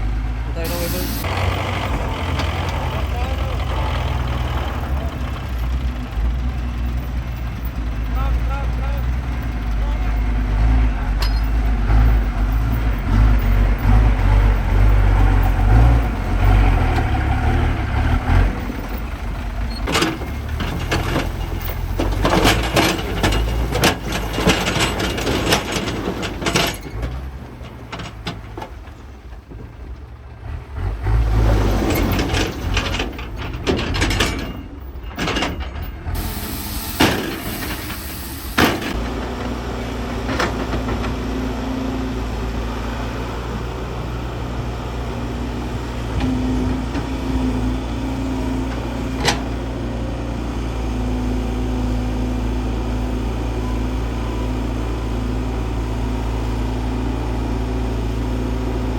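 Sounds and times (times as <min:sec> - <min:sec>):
diesel engines rumbling: 0:00.0 - 0:58.9
machinery clanks and knocks: 0:00.6 - 0:30.3, 0:31.0 - 0:41.7, 0:46.0 - 0:50.0.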